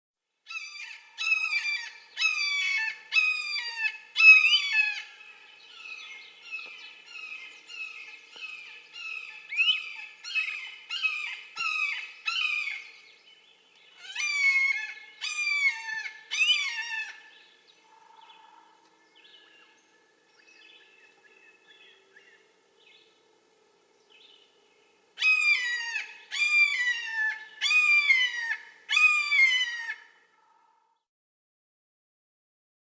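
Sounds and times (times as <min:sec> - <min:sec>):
hawk screaming calls: 0:00.5 - 0:05.2, 0:14.0 - 0:17.3, 0:25.2 - 0:30.6.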